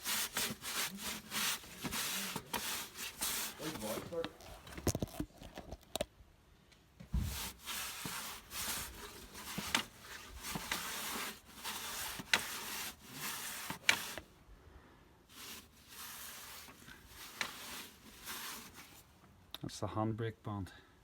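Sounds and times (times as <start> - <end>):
hissy rubbing strokes: 0.0 - 4.2, 7.2 - 14.3, 15.3 - 19.1.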